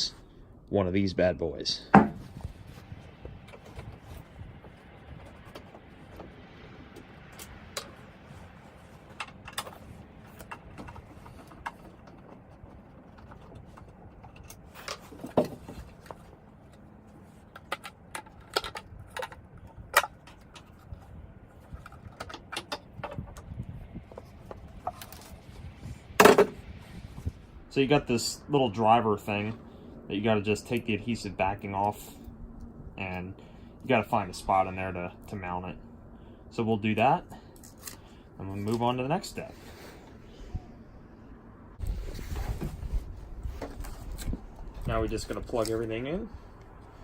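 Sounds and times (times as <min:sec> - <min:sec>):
plastic parts being handled: 0:02.0 - 0:26.6.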